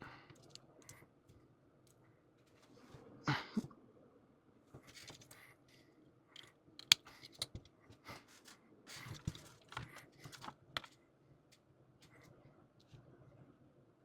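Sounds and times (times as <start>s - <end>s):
sharp plastic clicks: 6.4s - 7.7s.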